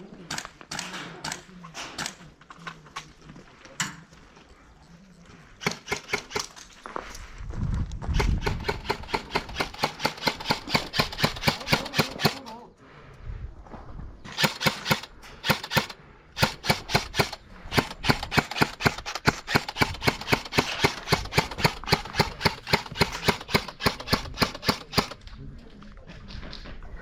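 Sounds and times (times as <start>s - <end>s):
airsoft gun shots: 14.3s - 25.2s.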